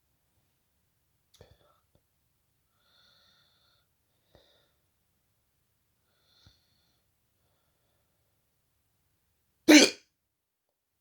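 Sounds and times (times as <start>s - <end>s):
person breathing faintly: 2.7s - 4.9s.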